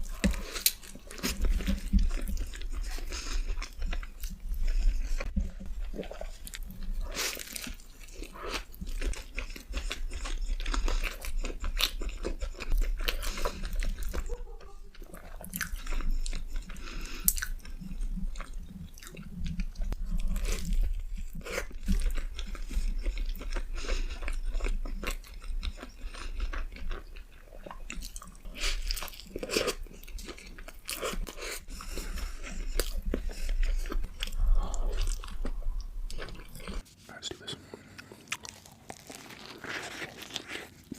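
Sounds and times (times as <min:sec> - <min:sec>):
crunchy bites and chewing: 0:00.0 - 0:36.8, 0:37.8 - 0:40.9.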